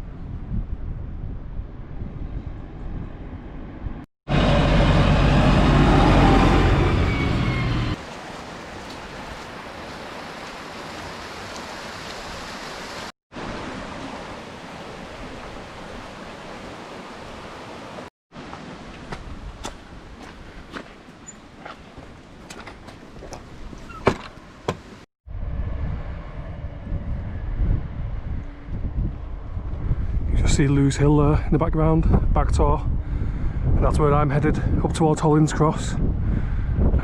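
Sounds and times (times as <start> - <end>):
wind buffeting microphone: 0.0 - 4.0, 25.3 - 37.0.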